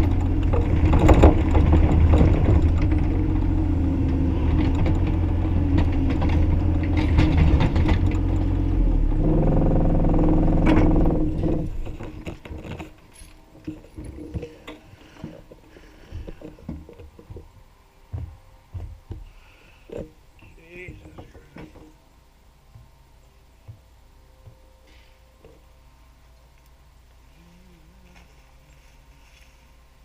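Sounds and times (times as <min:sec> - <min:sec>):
excavator diesel engine: 0:00.0 - 0:17.4.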